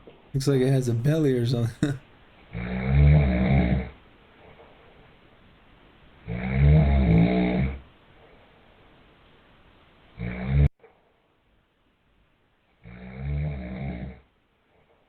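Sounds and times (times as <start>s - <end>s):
person snoring: 2.6s - 3.9s, 6.3s - 7.8s, 12.9s - 14.2s.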